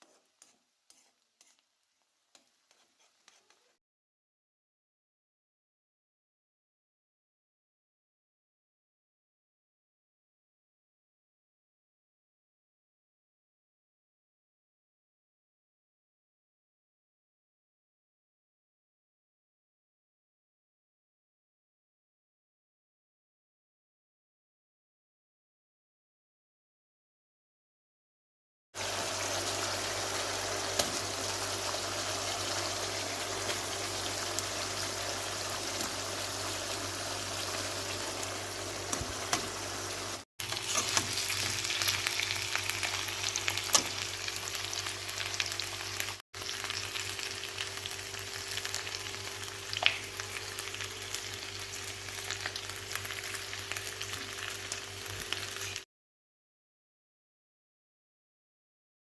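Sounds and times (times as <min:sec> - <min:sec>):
food sizzling in a pan: 0:00.0 - 0:03.8, 0:28.8 - 0:55.9.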